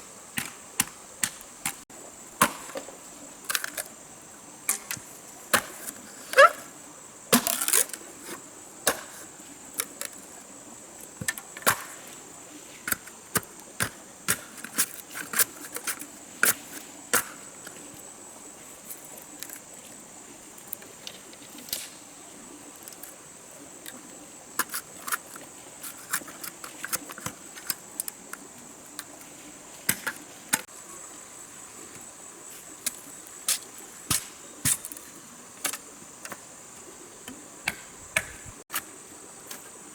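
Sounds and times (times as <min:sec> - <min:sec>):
high insect drone: 0:00.0 - 0:39.9
knocks of wood being worked: 0:35.6 - 0:38.9.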